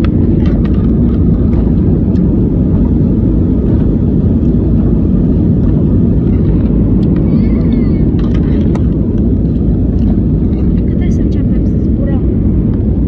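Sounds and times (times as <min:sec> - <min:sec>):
faint clicks and rattles: 0:00.0 - 0:02.3, 0:08.1 - 0:11.2
airliner cabin engine rumble: 0:00.0 - 0:13.0.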